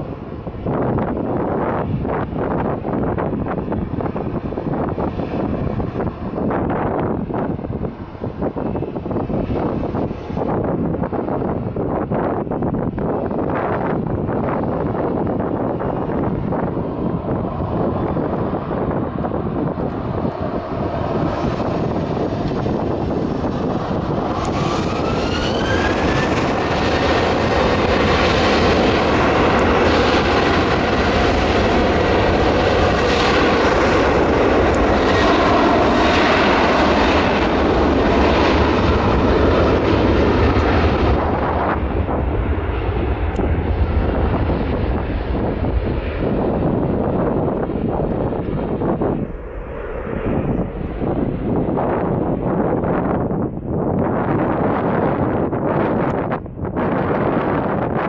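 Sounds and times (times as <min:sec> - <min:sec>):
aircraft engines whining: 0:00.0 - 0:58.0
wind buffeting microphone: 0:00.0 - 0:58.0.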